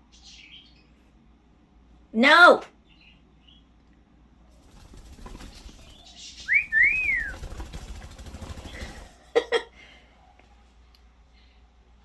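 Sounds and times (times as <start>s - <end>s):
sharp bird cries: 5.4s - 7.6s
bird whistling: 6.4s - 7.6s.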